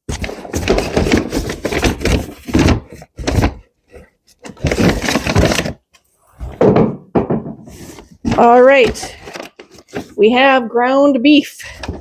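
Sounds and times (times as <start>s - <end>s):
packaging rustling and crinkling: 0.0s - 5.9s, 7.7s - 10.2s
knocks: 6.5s - 7.8s.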